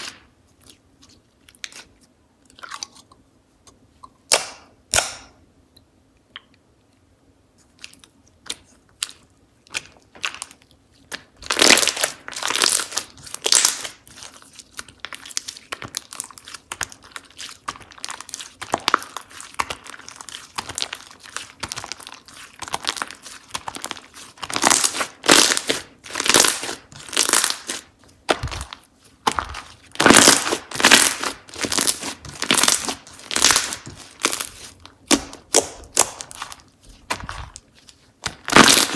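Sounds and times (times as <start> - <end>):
slime crackling and popping: 9.7 - 38.9.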